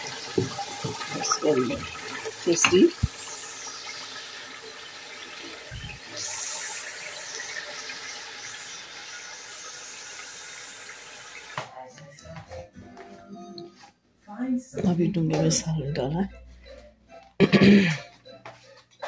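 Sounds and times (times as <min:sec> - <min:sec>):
curry sizzling in a pot: 0:00.0 - 0:11.6.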